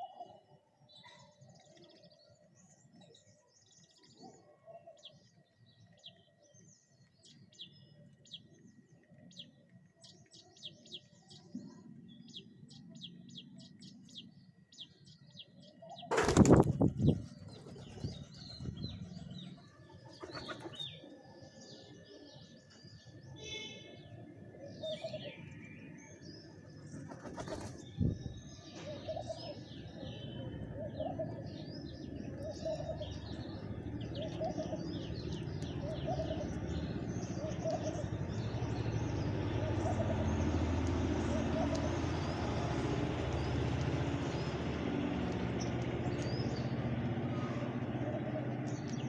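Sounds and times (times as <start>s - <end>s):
small birds chirping: 0.0s - 49.0s
pigeon wings flapping: 16.1s - 18.6s, 27.0s - 27.8s
pigeon cooing: 35.8s - 36.6s.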